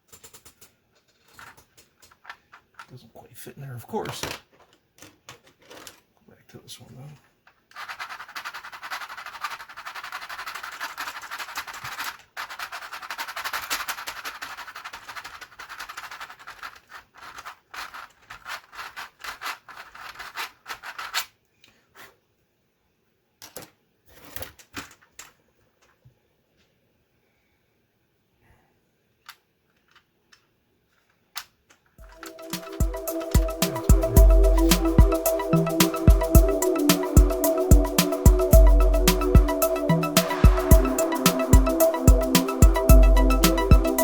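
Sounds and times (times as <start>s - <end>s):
plastic keyboard parts rasping: 0.0s - 3.0s, 3.9s - 6.1s, 7.2s - 21.3s.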